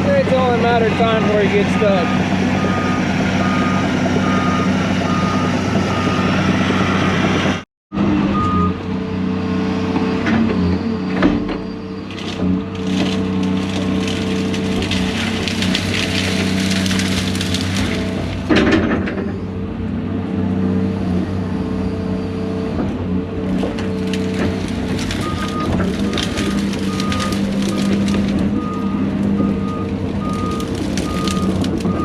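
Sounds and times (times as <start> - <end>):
diesel machine running: 0.0 - 32.0
loud wood crack: 11.2 - 19.2, 23.5 - 32.0
brush crackling and snapping: 12.1 - 18.6, 23.6 - 32.0.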